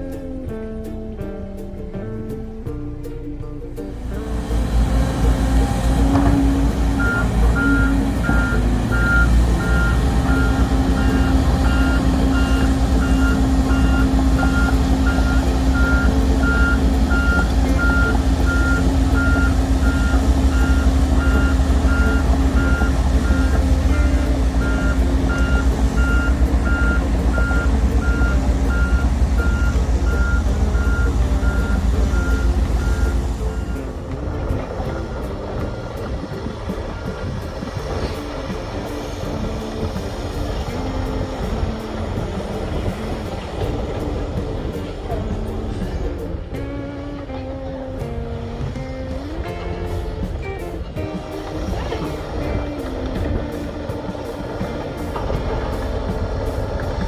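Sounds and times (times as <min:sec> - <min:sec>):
diesel engine running: 0:00.0 - 0:57.0
back-up alarm beeping: 0:07.0 - 0:34.0.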